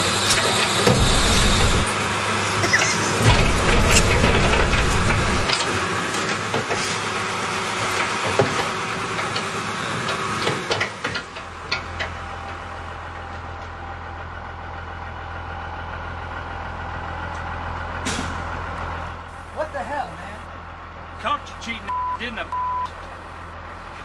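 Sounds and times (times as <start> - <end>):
heavy vehicle engine idling: 0.0 - 24.0
knocks and clanks: 0.3 - 1.9, 2.7 - 6.9.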